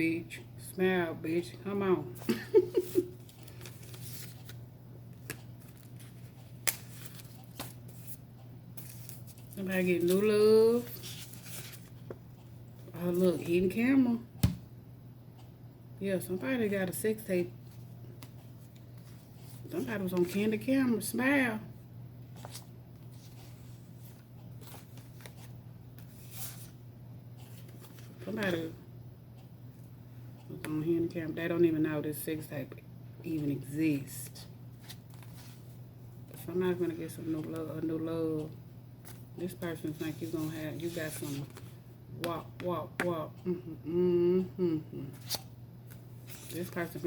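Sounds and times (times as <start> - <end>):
steady low hum: 0.0 - 47.0
cards being shuffled: 2.8 - 8.2, 34.8 - 35.6, 45.1 - 46.8.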